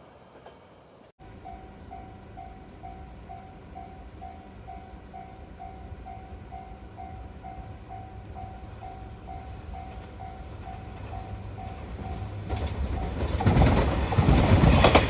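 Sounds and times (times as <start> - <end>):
approaching train rumble: 0.0 - 15.0
level crossing warning bell: 1.2 - 13.3.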